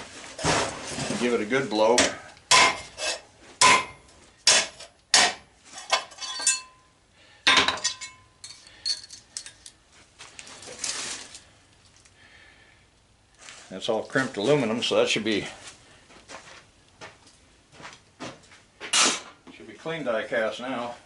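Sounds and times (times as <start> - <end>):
hammer striking metal: 2.0 - 2.9, 3.6 - 5.4
loose metal pieces clinking: 5.8 - 6.8, 7.6 - 9.8.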